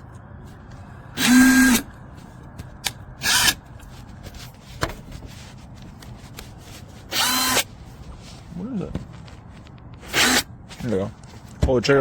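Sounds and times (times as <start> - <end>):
impact wrench motor spinning: 1.2 - 1.9, 3.2 - 3.6, 7.1 - 7.7, 10.1 - 10.5.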